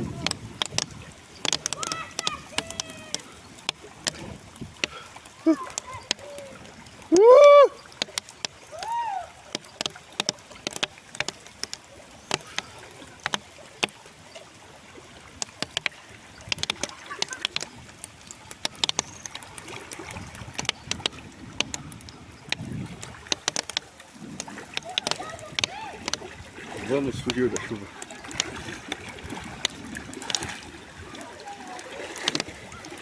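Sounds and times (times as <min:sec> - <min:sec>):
heavy rain: 0:00.0 - 0:07.9
raindrops ticking: 0:00.0 - 0:33.0.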